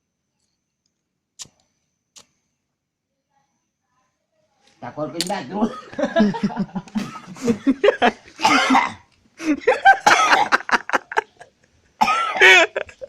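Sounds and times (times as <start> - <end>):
man coughing: 8.4 - 9.1, 9.8 - 10.8, 12.0 - 13.0.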